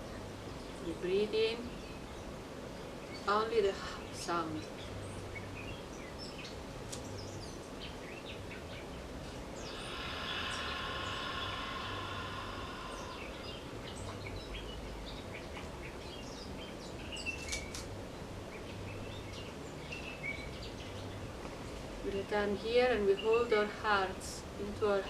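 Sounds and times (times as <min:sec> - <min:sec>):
birds chirping: 0:00.0 - 0:25.0
woman exhaling haaa: 0:09.6 - 0:13.8.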